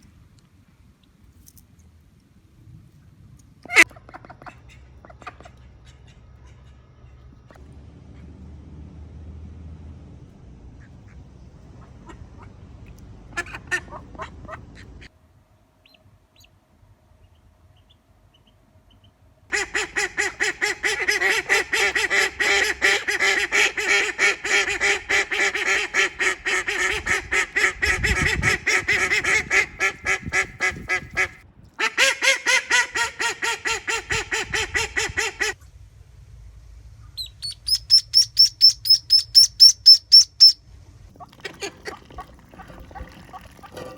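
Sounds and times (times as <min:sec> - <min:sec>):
duck quacking rapidly: 0:03.7 - 0:06.8, 0:13.3 - 0:15.1, 0:19.5 - 0:35.6
high thin chirps: 0:37.2 - 0:40.6.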